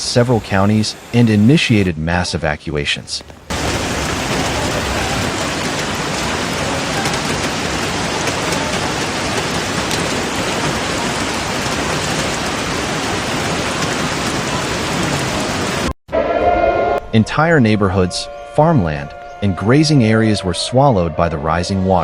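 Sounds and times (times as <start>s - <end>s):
heavy rain pattering on surfaces: 3.0s - 15.9s.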